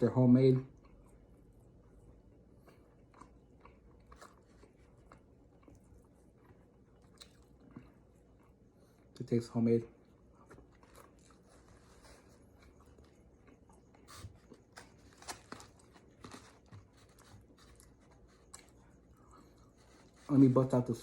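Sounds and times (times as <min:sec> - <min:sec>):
faint chewing: 0:00.5 - 0:21.0.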